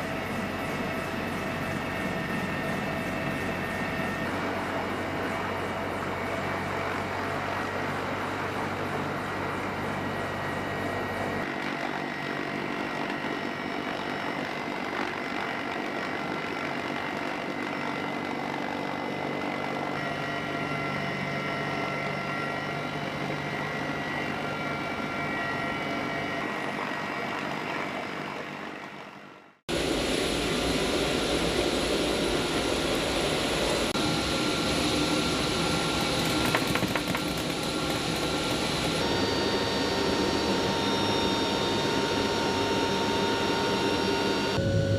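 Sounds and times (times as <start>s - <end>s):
aircraft engine noise: 0.0s - 44.9s
high whining tones: 29.8s - 44.9s.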